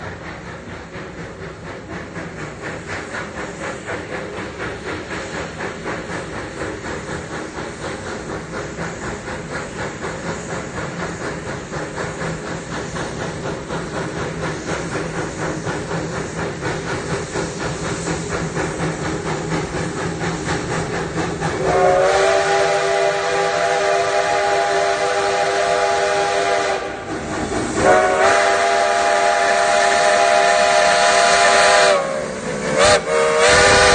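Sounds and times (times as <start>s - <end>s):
train chugging: 0.0s - 33.9s
train whistle: 21.6s - 27.1s, 27.8s - 33.9s.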